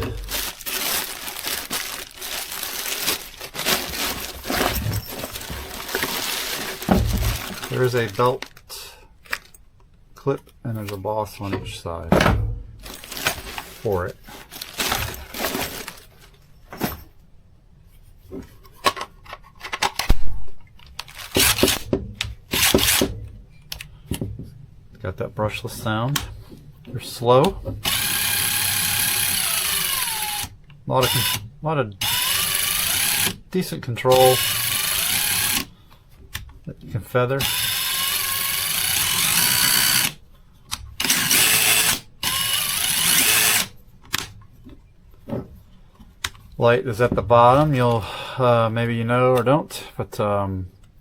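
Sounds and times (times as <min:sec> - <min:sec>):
impact driver motor spinning: 0:22.5 - 0:23.1, 0:32.0 - 0:33.4, 0:34.2 - 0:35.7, 0:37.4 - 0:40.2, 0:41.0 - 0:43.7.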